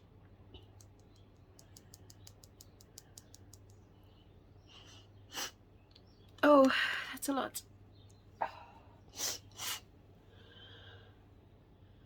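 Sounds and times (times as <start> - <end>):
faint small clicks: 0.2 - 3.9.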